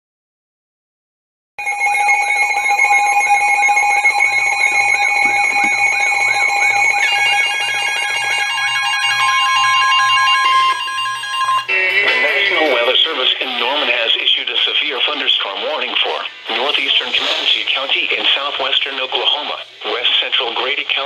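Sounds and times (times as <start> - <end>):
two-tone alert signal: 1.6 - 14.4
warbling alarm chirping: 1.6 - 20.3.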